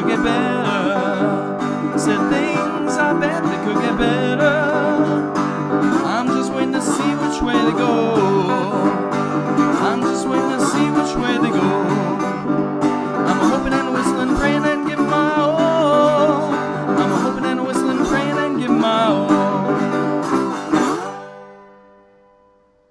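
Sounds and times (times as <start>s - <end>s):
plucked guitar chords: 0.0s - 22.9s.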